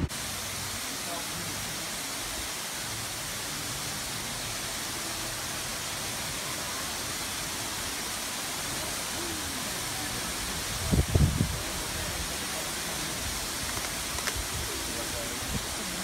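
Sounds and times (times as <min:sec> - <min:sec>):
steady rushing noise: 0:08.6 - 0:16.0.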